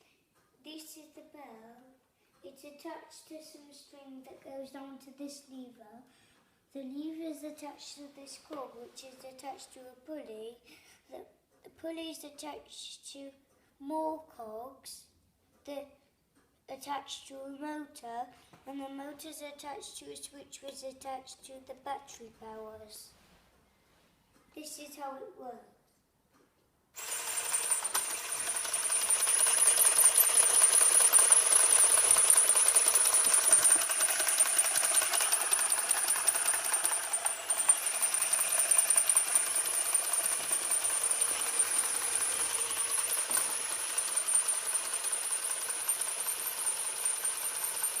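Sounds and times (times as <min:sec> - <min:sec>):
plastic cogs rattling: 0:27.0 - 0:48.0.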